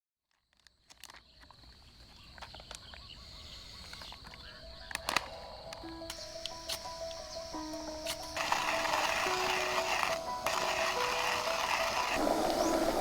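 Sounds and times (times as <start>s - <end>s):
high-pitched insect drone: 3.2s - 13.0s
soft background music: 3.6s - 13.0s
scattered clicks and ticks: 3.7s - 12.2s.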